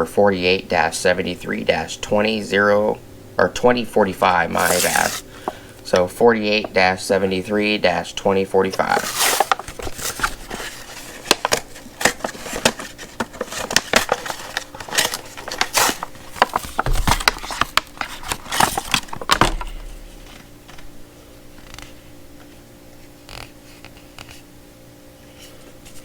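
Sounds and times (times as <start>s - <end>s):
packaging rustling: 4.5s - 5.9s, 8.7s - 20.5s.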